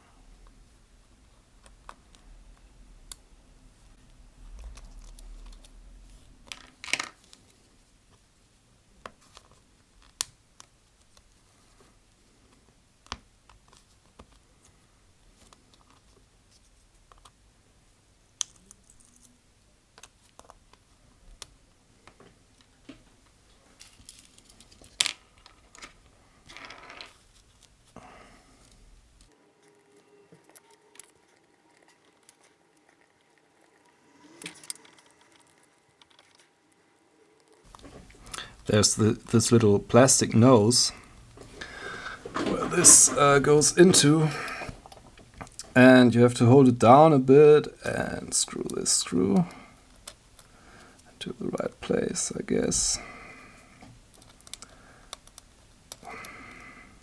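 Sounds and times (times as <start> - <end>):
small tools clicking and tapping: 54.1 - 56.0.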